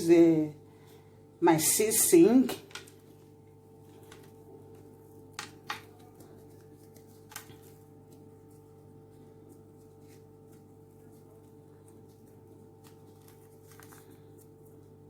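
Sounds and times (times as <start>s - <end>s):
steady electrical hum: 0.0s - 15.0s.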